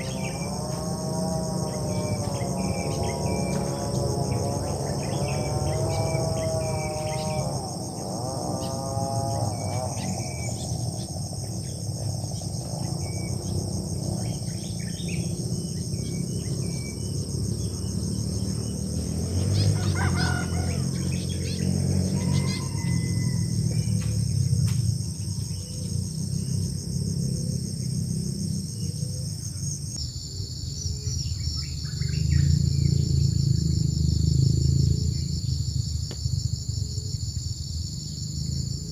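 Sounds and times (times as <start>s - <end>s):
insects droning: 0.0s - 38.9s
bird chirps: 1.4s - 26.7s, 30.0s - 38.9s
rooster crowing: 19.4s - 24.4s.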